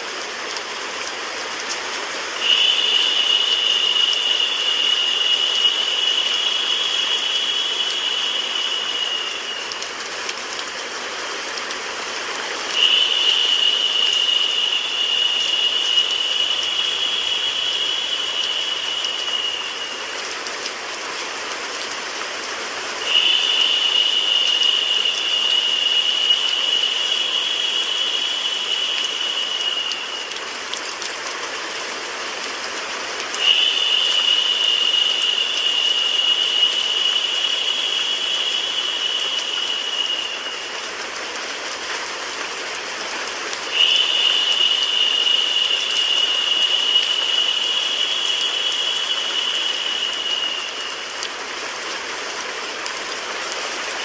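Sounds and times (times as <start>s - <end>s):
white noise: 0.0s - 30.8s
rain: 0.0s - 54.0s
bright high hiss: 2.4s - 10.2s, 12.6s - 20.4s, 23.0s - 30.6s, 33.4s - 40.9s, 43.7s - 51.4s.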